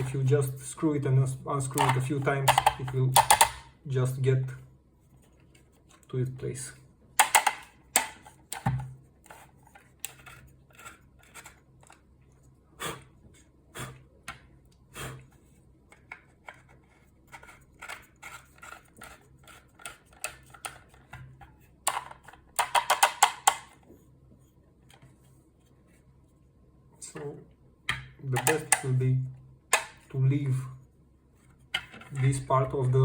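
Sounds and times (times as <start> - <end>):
plastic parts clicking and knocking: 1.6 - 3.7, 7.2 - 12.0, 15.9 - 23.8, 27.9 - 29.0, 29.7 - 30.1, 31.6 - 32.5.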